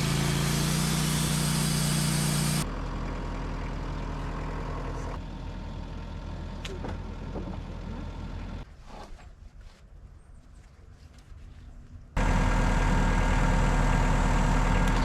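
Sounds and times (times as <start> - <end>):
sawmill engine idling: 0.0 - 8.6, 12.2 - 15.0.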